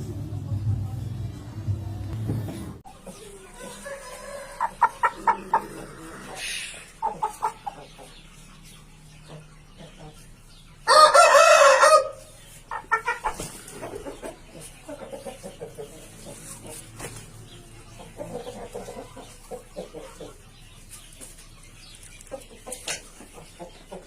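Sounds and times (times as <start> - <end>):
rooster clucking: 2.8 - 20.5
rooster crowing: 3.6 - 6.2, 10.9 - 12.2.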